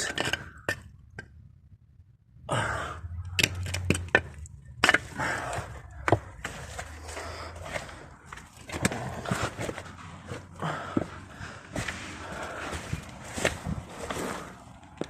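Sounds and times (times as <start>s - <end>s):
sharp clicks and knocks: 3.2s - 5.2s
clothing rustling and scraping: 5.5s - 15.0s.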